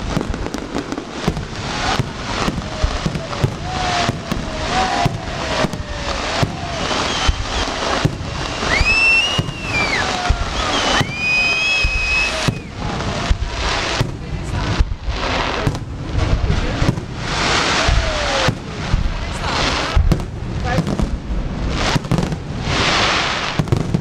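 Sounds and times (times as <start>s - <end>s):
fireworks bangs: 0.0s - 24.0s
fireworks crackling: 0.0s - 24.0s
whistling fireworks: 0.0s - 24.0s.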